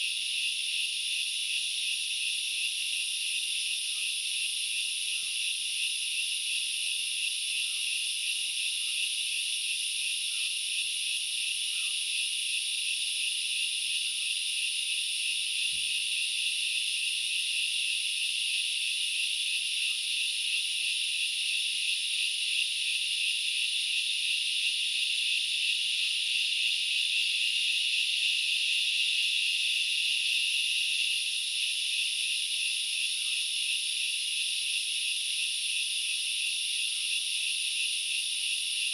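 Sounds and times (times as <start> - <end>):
insects droning: 0.0 - 38.9.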